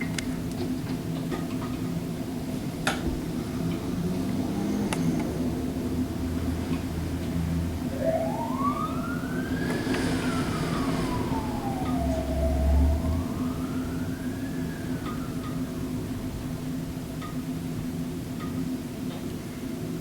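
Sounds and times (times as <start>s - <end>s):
emergency vehicle siren wailing: 0.4s - 17.6s
low hum: 5.9s - 17.0s.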